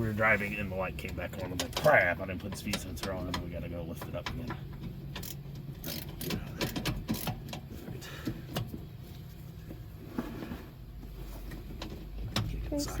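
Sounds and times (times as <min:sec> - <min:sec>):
sharp clicks and knocks: 0:01.0 - 0:08.9, 0:11.4 - 0:12.7.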